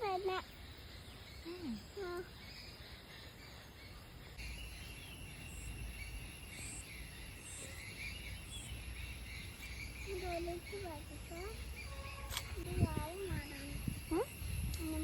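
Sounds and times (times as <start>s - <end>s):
faint bird chirps: 0.0s - 15.0s
high insect trill: 4.4s - 15.0s.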